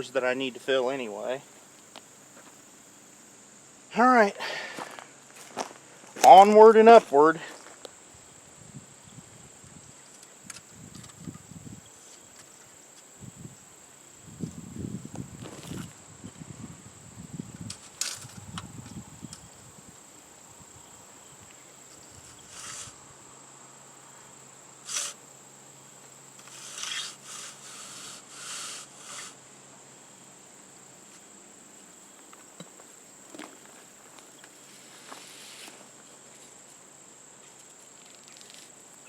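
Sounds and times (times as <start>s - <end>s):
insects droning: 0.0s - 39.0s
crunching and rustling: 15.4s - 16.0s, 37.4s - 38.8s
short scraping sounds: 22.0s - 23.0s, 24.8s - 25.2s, 26.4s - 29.4s, 34.6s - 35.9s.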